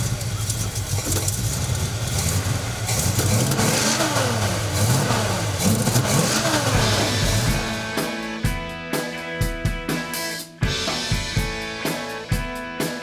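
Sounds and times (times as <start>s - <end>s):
car engine idling and revving: 0.0s - 7.9s.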